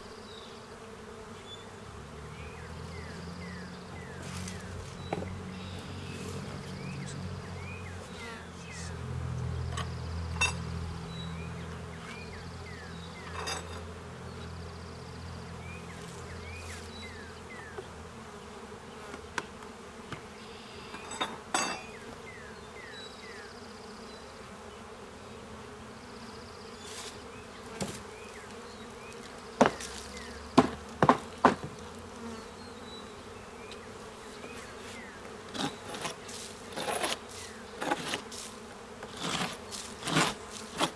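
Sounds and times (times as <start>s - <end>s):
honeybees buzzing: 0.0s - 40.9s
wooden knocks from hive boxes: 4.0s - 8.4s, 19.0s - 22.0s, 27.2s - 32.4s, 33.6s - 40.9s.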